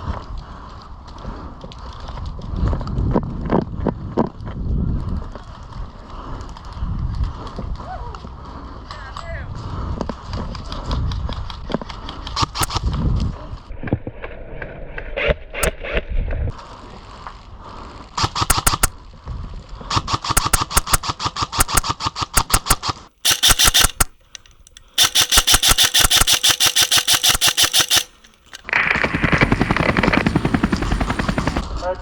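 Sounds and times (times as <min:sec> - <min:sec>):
airsoft guns firing full auto: 0:18.2 - 0:18.9, 0:19.9 - 0:31.6.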